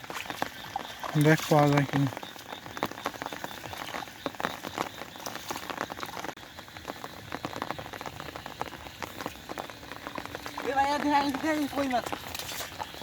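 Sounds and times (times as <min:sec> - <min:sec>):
water drops splashing on floodwater: 0:00.0 - 0:13.0.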